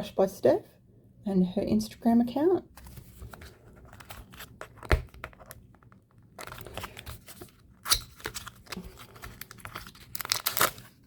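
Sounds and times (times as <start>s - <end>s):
plastic wrapper crinkling and tearing: 3.8s - 11.0s.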